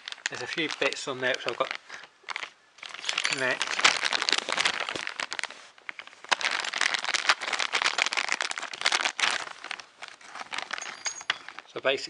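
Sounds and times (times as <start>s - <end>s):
plastic packaging crinkling: 0.0s - 11.9s.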